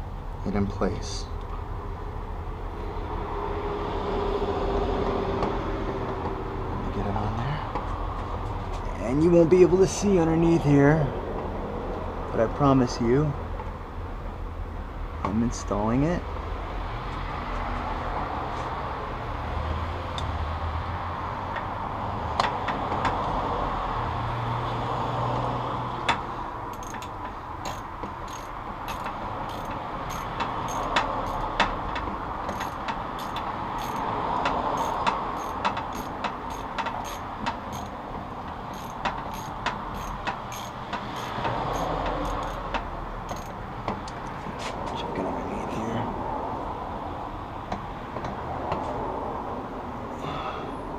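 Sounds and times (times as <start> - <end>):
ratchet clicking: 26.7 - 43.6.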